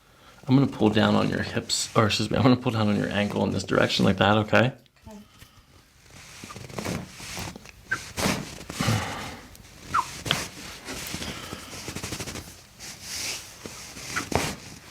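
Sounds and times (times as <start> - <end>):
rustling: 5.8 - 14.9
short high squeaks: 7.9 - 8.2, 9.8 - 10.3, 13.8 - 14.3.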